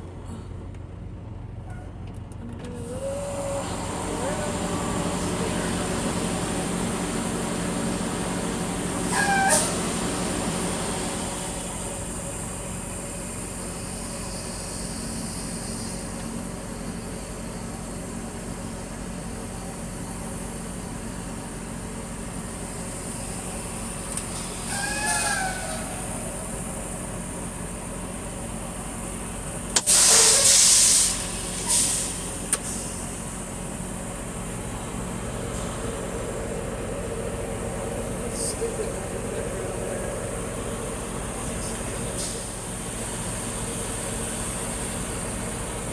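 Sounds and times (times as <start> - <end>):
truck engine running: 0.0 - 45.9
high brake squeals: 1.6 - 2.0, 9.0 - 10.2, 24.2 - 26.7, 29.8 - 33.0
air brakes hissing: 2.7 - 19.2, 21.8 - 27.8, 29.8 - 45.9.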